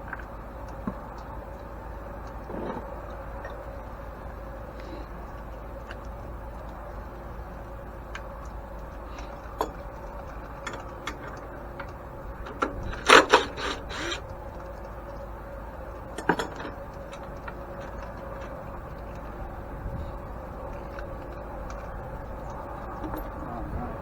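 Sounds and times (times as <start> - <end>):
light metal clicks: 8.1 - 19.5.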